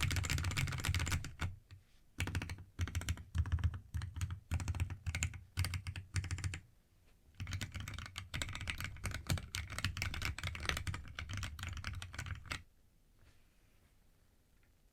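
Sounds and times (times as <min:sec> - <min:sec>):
typing on mechanical keyboard: 0:00.0 - 0:01.5, 0:02.2 - 0:06.6, 0:07.4 - 0:12.6.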